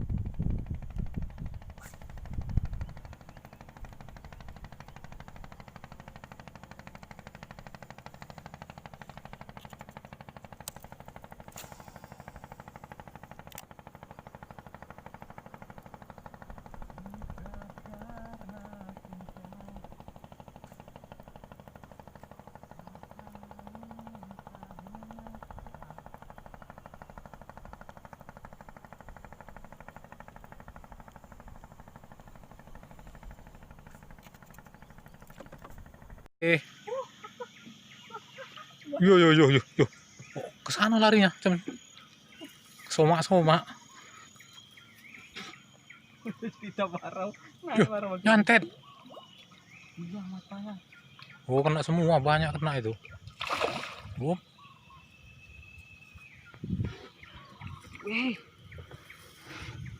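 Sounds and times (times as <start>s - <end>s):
small engine running: 0.0s - 59.9s
faint wavering tone: 22.7s - 26.3s.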